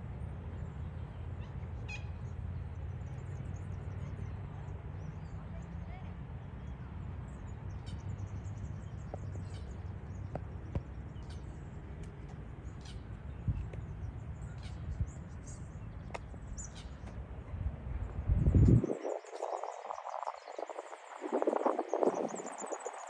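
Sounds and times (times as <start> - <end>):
small birds chirping: 3.1 - 23.0
steady low rumble: 8.1 - 23.0.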